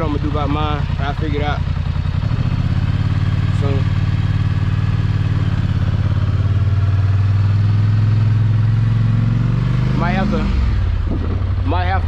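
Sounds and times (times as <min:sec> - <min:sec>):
atv engine idling: 0:00.0 - 0:08.6.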